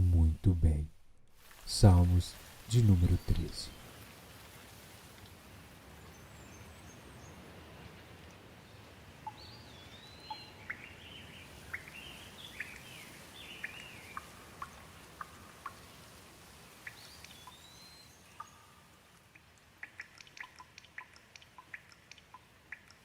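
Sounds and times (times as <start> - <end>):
rain hiss: 0.0 - 23.0.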